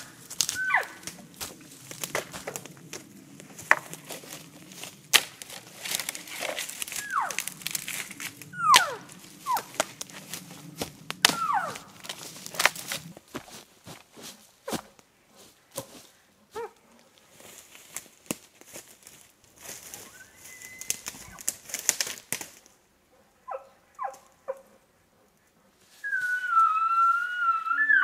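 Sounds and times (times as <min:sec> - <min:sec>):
elk calls: 0:00.0 - 0:01.2, 0:06.9 - 0:07.5, 0:08.5 - 0:09.8, 0:11.2 - 0:12.0, 0:26.0 - 0:28.0
footsteps through dry twigs: 0:00.0 - 0:22.8, 0:25.8 - 0:28.0.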